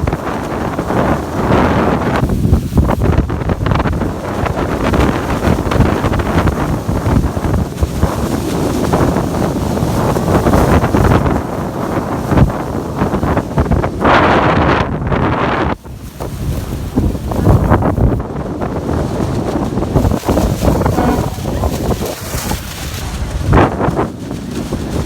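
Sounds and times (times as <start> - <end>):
wind buffeting microphone: 0.0 - 25.0
waterfall rushing: 20.0 - 23.6.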